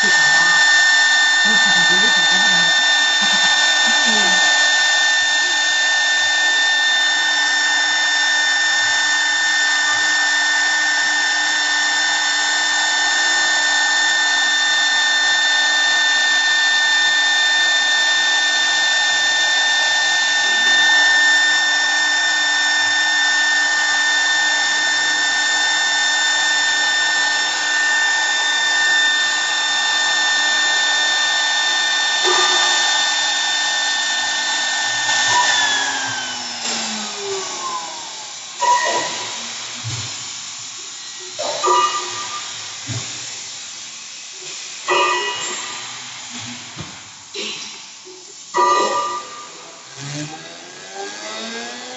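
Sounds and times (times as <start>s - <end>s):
wood lathe whine: 0.0s - 51.9s.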